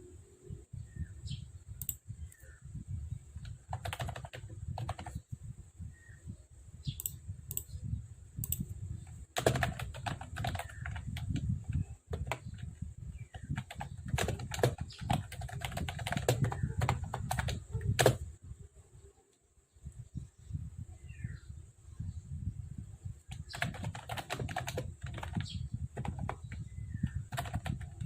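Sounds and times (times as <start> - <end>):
typing on keyboard: 3.4 - 5.2, 9.4 - 18.2, 23.3 - 28.0.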